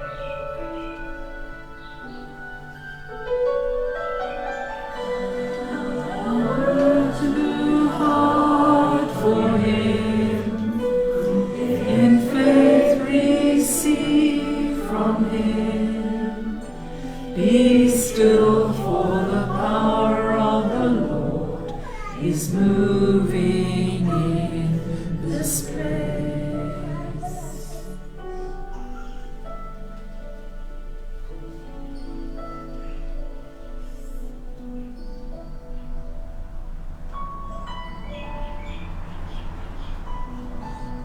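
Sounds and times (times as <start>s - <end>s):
choir singing a hymn: 3.2s - 29.8s, 37.1s - 41.0s.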